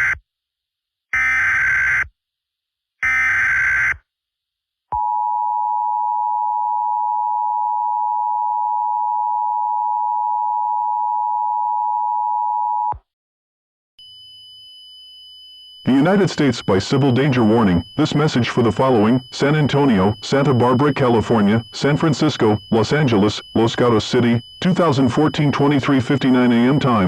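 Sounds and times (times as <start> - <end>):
two-tone attention signal: 15.8 - 27.0
warbling digital header bursts: 15.9 - 27.0.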